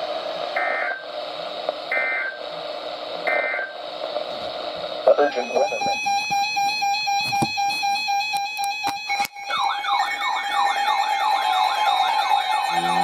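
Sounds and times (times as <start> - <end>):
warbling siren tone: 9.2 - 13.0
electronic chord of held tones: 12.4 - 13.0.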